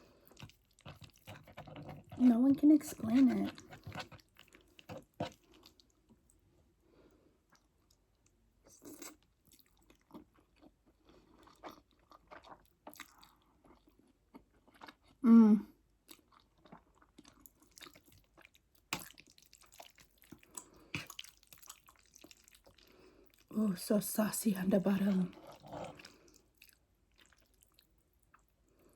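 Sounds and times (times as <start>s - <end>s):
chewing with wet mouth clicks: 0.2s - 2.2s, 3.0s - 6.4s, 7.5s - 15.2s, 16.0s - 23.5s, 25.3s - 28.6s.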